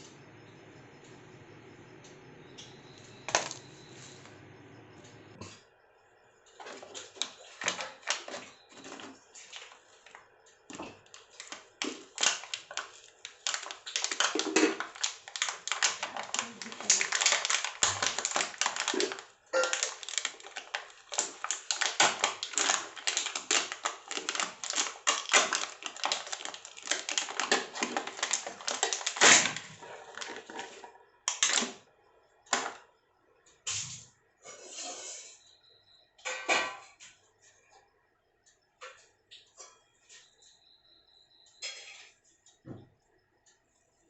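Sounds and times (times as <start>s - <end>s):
rapid clicking and crinkling: 6.5s - 31.8s.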